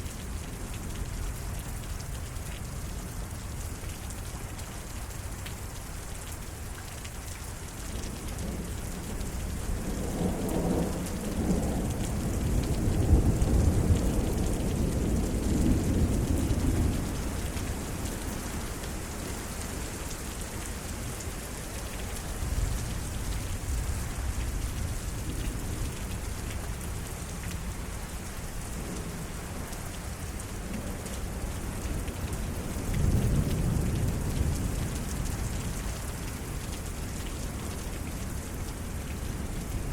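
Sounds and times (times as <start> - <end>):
steady rain falling: 0.0 - 39.9
rolling thunder: 9.6 - 17.8.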